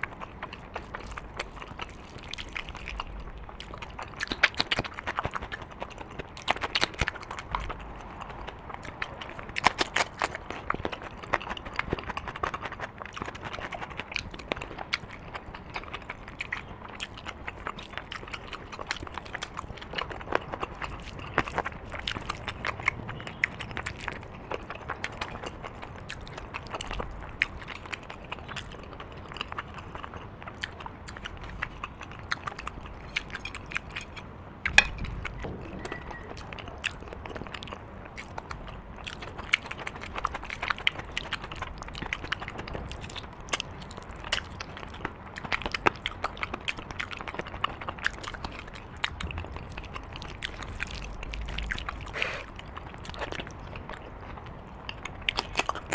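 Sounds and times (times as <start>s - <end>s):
person chewing: 0.0s - 55.9s
wet mouth clicks and smacks: 0.0s - 55.9s.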